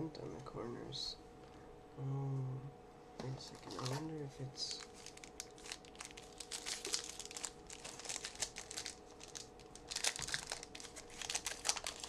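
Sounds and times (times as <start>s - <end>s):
faint steady hum: 0.0s - 12.0s
cards rustling: 3.5s - 12.0s
foil wrapper crinkling: 3.5s - 12.0s.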